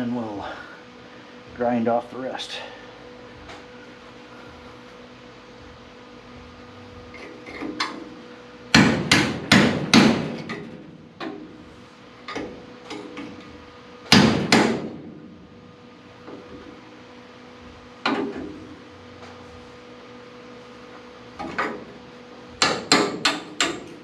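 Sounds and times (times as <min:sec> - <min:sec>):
hammer striking metal: 0:08.7 - 0:10.6, 0:14.1 - 0:15.0, 0:22.6 - 0:24.0.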